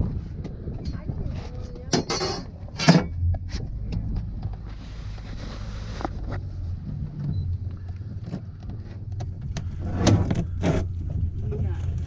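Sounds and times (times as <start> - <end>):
outboard motor idling: 3.7 - 12.0.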